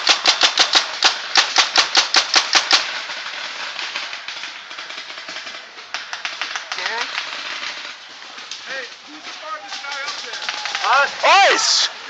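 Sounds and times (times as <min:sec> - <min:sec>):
paintball marker rapid firing: 0:00.0 - 0:07.9
faint paintball shots: 0:00.0 - 0:11.9.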